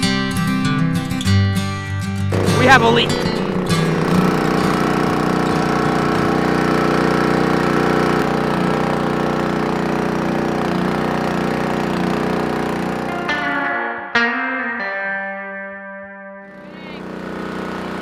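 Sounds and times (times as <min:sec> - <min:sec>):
machine engine idling: 0:02.3 - 0:13.5, 0:16.5 - 0:18.0.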